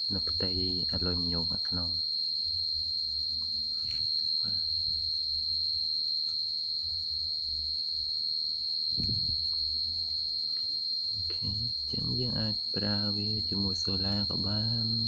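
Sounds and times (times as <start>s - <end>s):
high-pitched cooler whine: 0.0s - 15.0s
low hum: 2.6s - 7.8s, 8.9s - 15.0s.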